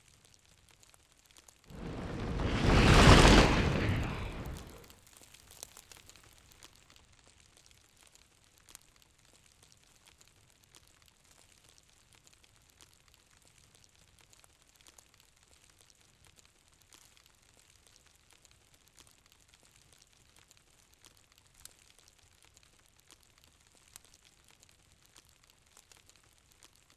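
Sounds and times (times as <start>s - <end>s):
fire crackling and popping: 1.7s - 4.9s.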